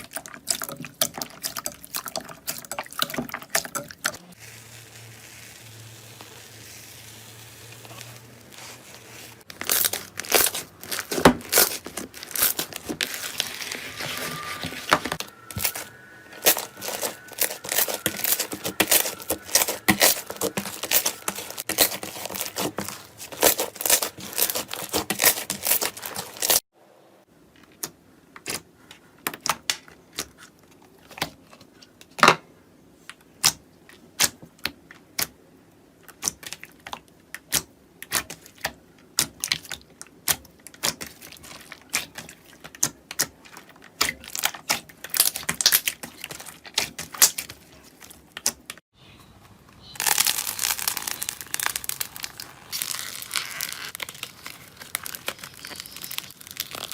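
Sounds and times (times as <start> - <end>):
slime crackling and popping: 0.3 - 26.6, 36.1 - 48.8, 50.0 - 56.9
soft hiss: 4.4 - 9.5.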